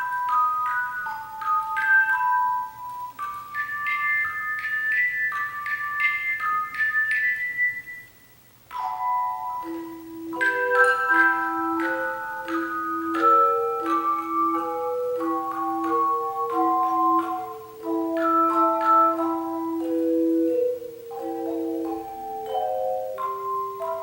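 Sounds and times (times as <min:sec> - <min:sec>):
chime ensemble melody: 0:00.0 - 0:24.0.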